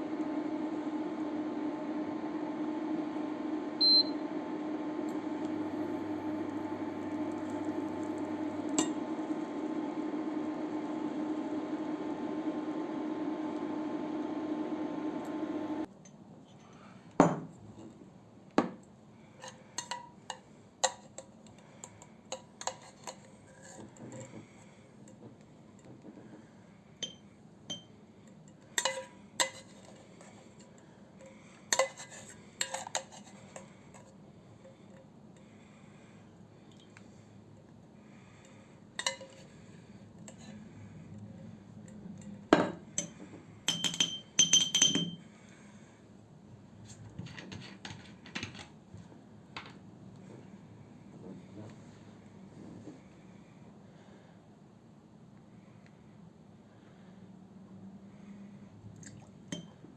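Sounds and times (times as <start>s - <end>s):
steady electrical hum: 0.0s - 15.9s
utensils clinking against dishes: 39.0s - 39.4s, 42.2s - 45.2s.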